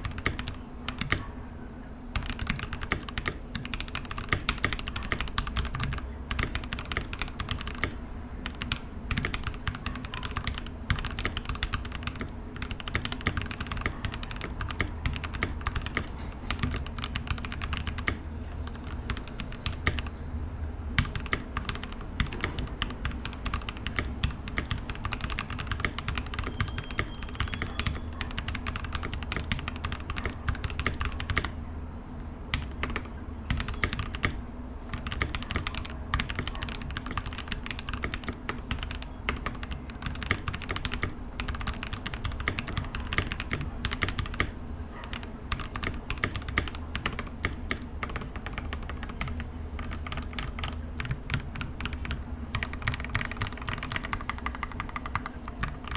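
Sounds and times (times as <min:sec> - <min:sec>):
mechanical keyboard typing: 0:00.0 - 0:01.3, 0:02.1 - 0:20.2, 0:21.0 - 0:31.6, 0:32.5 - 0:55.9.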